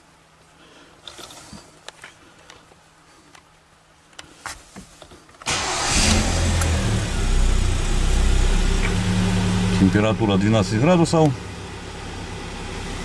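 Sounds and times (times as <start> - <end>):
car engine starting and running: 5.4 - 13.0.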